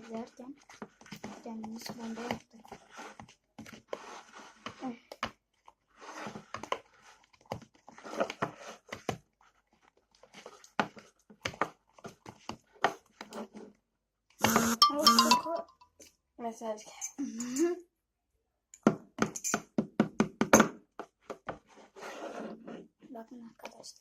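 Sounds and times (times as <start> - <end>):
wet sticky slime squishing: 0.0 - 13.3.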